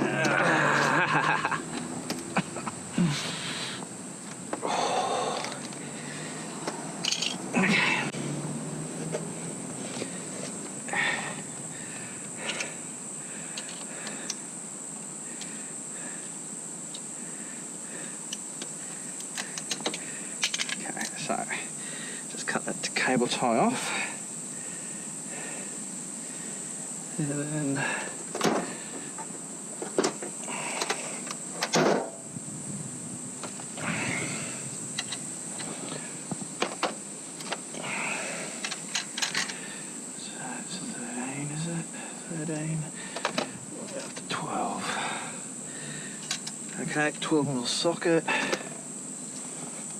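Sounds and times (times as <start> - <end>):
steady high-pitched hiss: 0.0 - 49.9
clicks and rustles of parts: 5.3 - 5.8, 6.6 - 7.4, 13.5 - 14.4, 18.3 - 21.2, 28.2 - 32.2, 34.9 - 37.7, 38.6 - 39.6, 43.2 - 44.3, 46.2 - 46.7
tools clicking and knocking: 7.0 - 7.4, 18.3 - 21.1.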